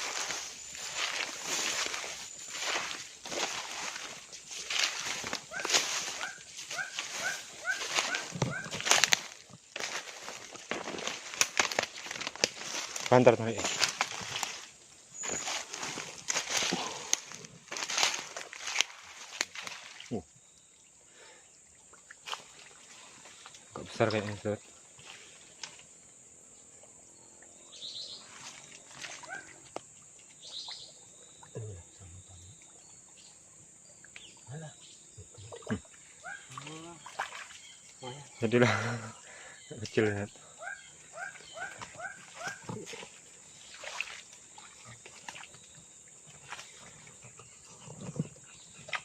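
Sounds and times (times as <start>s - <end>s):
rustling: 0.0s - 20.1s
soft splashes: 0.0s - 21.0s, 21.7s - 25.8s, 28.2s - 31.6s, 35.5s - 37.9s, 41.3s - 47.1s
high insect hum: 0.0s - 49.0s
low voice: 31.6s - 32.5s.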